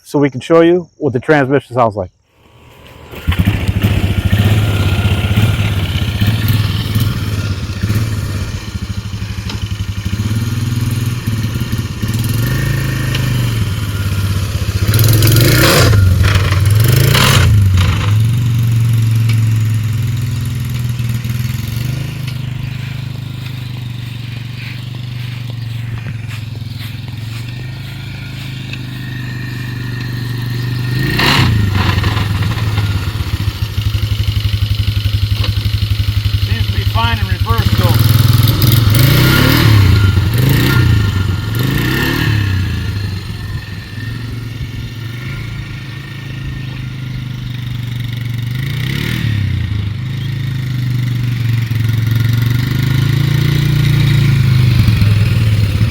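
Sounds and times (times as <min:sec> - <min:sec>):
atv engine droning: 0:00.0 - 0:55.9
harsh noisy engine bursts: 0:36.3 - 0:46.2.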